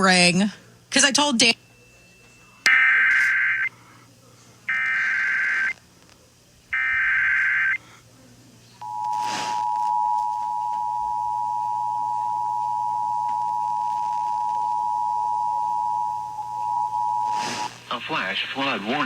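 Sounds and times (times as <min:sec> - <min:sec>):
steady two-tone attention signal: 0:08.8 - 0:17.7.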